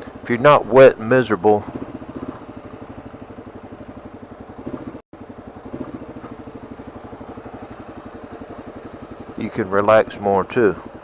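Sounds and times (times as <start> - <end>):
motorcycle engine pulsing: 0.0 - 11.0.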